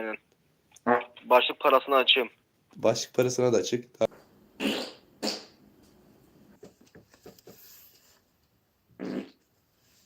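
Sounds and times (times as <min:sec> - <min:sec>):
short farts: 0:04.6 - 0:05.6, 0:09.0 - 0:09.4.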